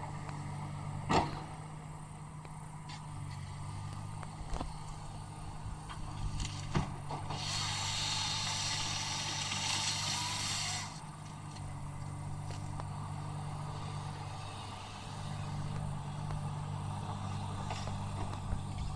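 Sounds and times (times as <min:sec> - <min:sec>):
diesel engine running: 0:00.0 - 0:18.9
loud hiss: 0:07.3 - 0:11.0.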